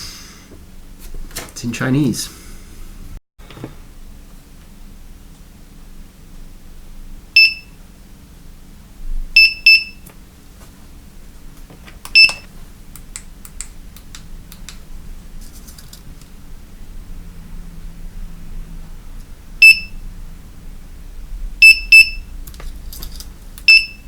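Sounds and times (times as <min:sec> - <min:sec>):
light switch short high beeps: 0:23.6 - 0:24.0.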